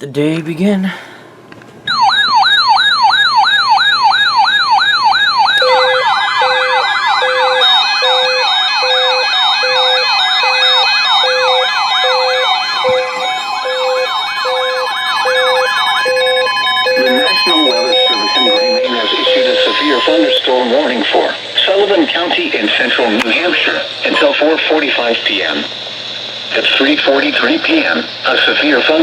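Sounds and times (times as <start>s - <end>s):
electronic alert siren sweeping: 1.9s - 21.8s
second overlapping siren: 1.9s - 24.5s
on-off electronic beep: 7.3s - 20.4s.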